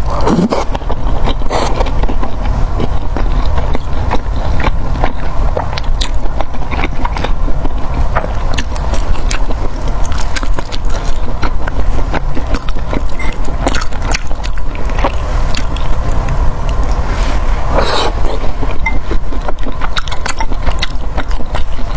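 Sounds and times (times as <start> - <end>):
wet mouth clicks: 0.0 - 17.1
person chewing food: 0.0 - 21.9
steady low rumble: 0.0 - 21.9.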